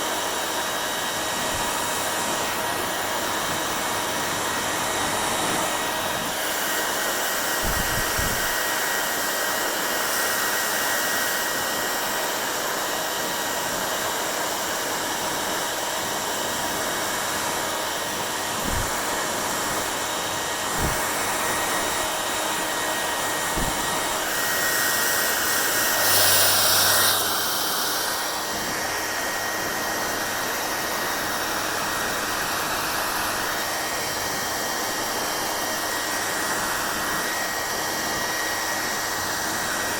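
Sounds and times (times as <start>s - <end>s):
hair dryer blowing: 0.0s - 39.9s
soft low thumps: 18.6s - 19.0s, 20.7s - 22.2s, 23.5s - 24.2s.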